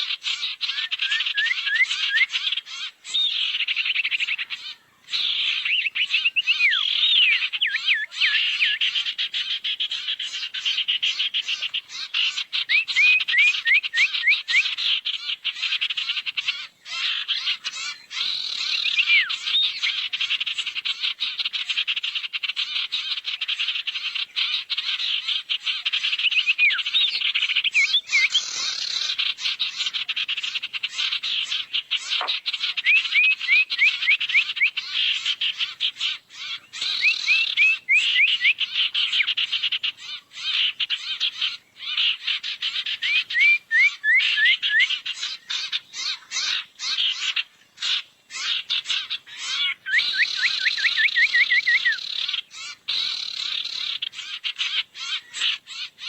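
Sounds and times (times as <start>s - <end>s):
whistled bird notes: 0.3s - 9.0s, 11.5s - 14.8s, 17.7s - 20.0s, 26.0s - 29.1s, 32.0s - 35.3s, 36.4s - 39.4s, 42.6s - 47.0s, 48.3s - 54.3s.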